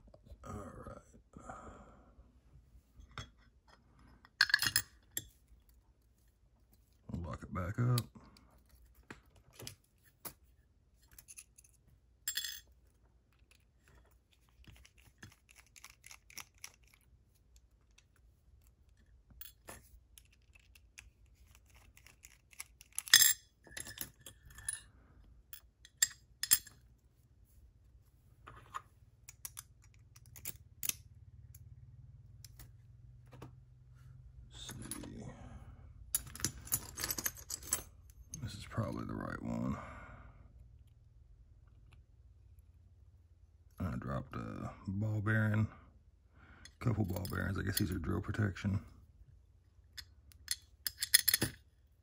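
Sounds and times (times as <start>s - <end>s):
small metallic clicks of lock picks: 14.6s - 17.1s, 18.9s - 24.8s, 29.2s - 31.7s, 49.9s - 51.6s.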